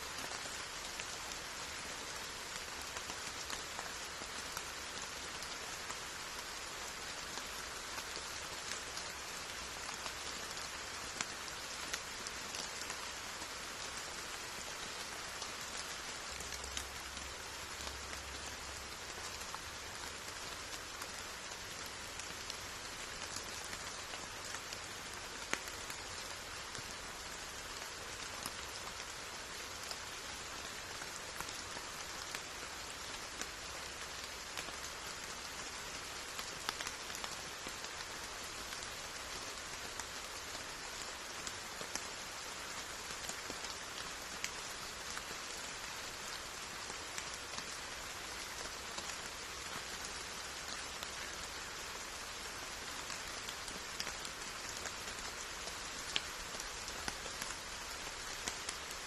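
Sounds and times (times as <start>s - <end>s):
rain hiss: 0.0s - 59.0s.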